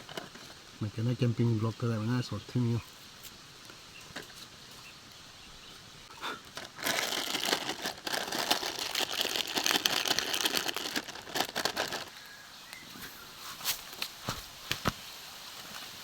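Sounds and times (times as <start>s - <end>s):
chip packet crinkling: 6.5s - 12.3s.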